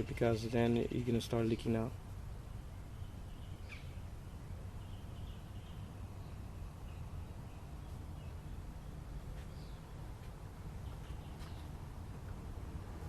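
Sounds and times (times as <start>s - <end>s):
steady low rumble: 0.0s - 13.0s
faint bird chirps: 2.6s - 8.6s.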